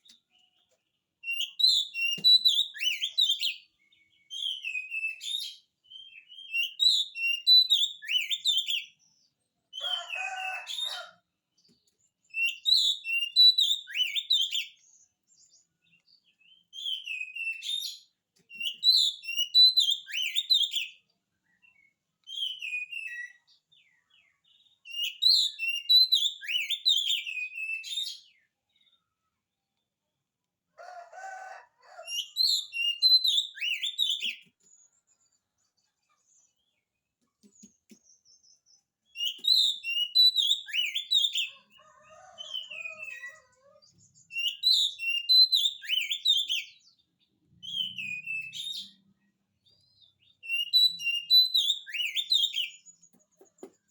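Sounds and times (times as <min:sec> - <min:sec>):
bird singing whistled notes: 0:01.3 - 0:09.0, 0:12.3 - 0:15.6, 0:16.4 - 0:28.5, 0:32.2 - 0:34.4, 0:38.0 - 0:41.6, 0:44.0 - 0:49.0, 0:49.7 - 0:53.0.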